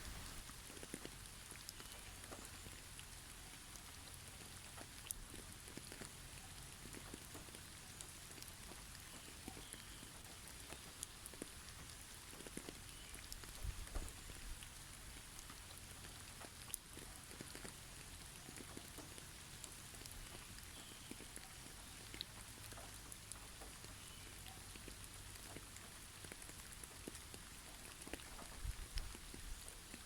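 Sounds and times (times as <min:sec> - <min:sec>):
snow pattering on trees: 0:00.0 - 0:03.4
faint bird chirps: 0:09.0 - 0:11.0, 0:12.8 - 0:13.3, 0:20.4 - 0:22.1, 0:23.9 - 0:24.6.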